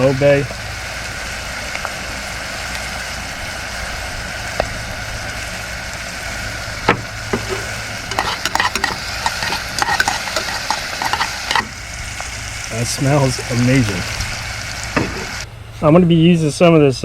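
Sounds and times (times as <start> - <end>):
vegetables sizzling in a pan: 0.0 - 15.4
utensil scraping a pan: 6.9 - 11.9.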